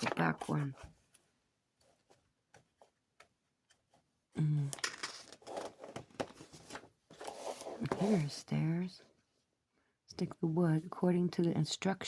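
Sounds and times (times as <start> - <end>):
paper and small parts handled: 4.7 - 8.2.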